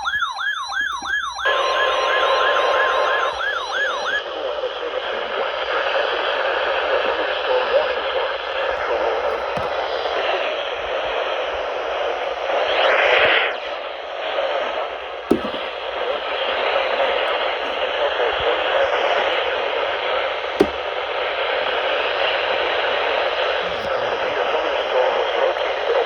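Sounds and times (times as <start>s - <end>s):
radio static hiss: 1.5s - 15.1s, 21.6s - 26.0s.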